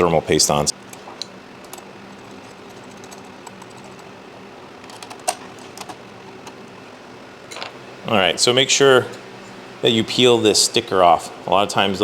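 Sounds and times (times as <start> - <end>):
steady low hum: 0.0 - 12.0
computer parts clicking: 4.8 - 6.6.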